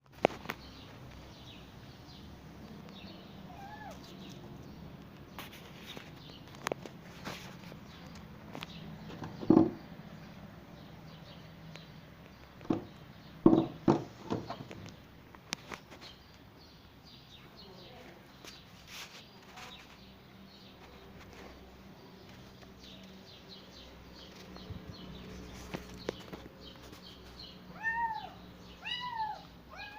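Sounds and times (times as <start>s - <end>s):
small birds chirping: 0.0s - 29.9s
cat meowing faintly: 3.4s - 4.2s, 27.7s - 29.9s.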